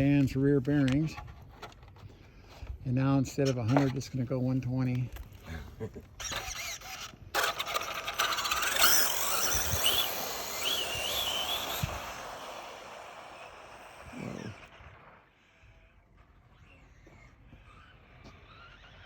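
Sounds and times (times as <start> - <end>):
rc car motor whining: 6.0 - 19.0.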